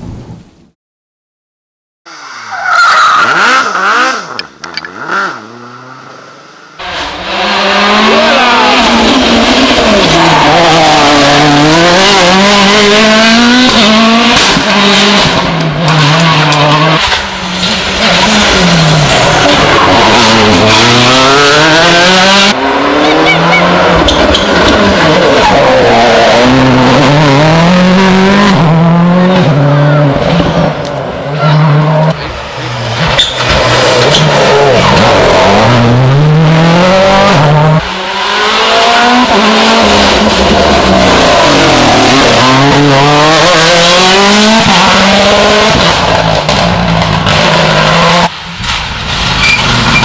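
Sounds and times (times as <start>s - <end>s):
tyre squeal and skidding: 2.1s - 4.4s, 22.9s - 26.0s, 32.7s - 35.2s, 49.3s - 50.0s
rally car engines revving: 2.1s - 50.0s.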